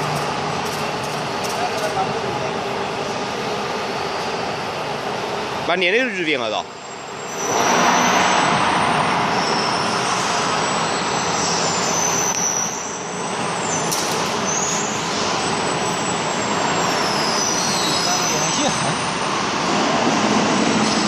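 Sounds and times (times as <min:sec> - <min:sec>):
plate bending machine running: 0:00.0 - 0:02.7.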